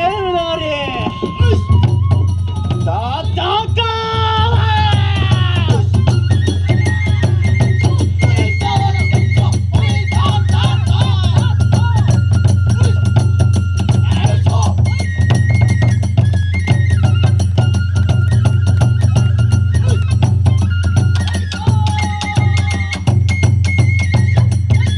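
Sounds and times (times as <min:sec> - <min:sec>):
drum strokes: 0:00.0 - 0:24.9
flute playing high notes: 0:00.0 - 0:24.9
person chanting: 0:02.6 - 0:06.0, 0:08.2 - 0:12.2.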